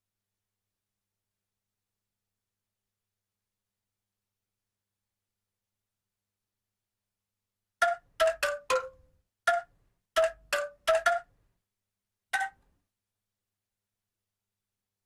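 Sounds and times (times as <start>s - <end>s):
bamboo angklung notes: 7.8s - 11.3s.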